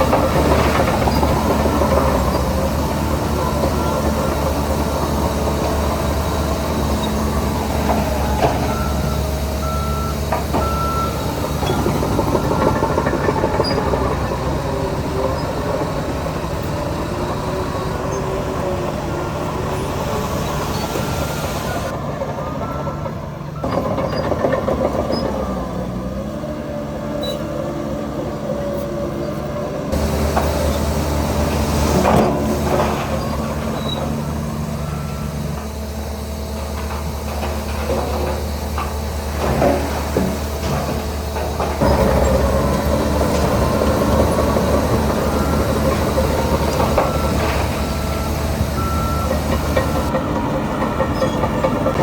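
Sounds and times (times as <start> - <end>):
diesel machinery engine under load: 0.0 - 52.0.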